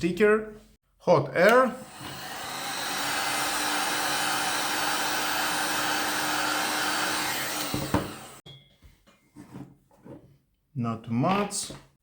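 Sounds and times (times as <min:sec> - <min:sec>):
hot-air blower rushing: 0:01.6 - 0:08.4.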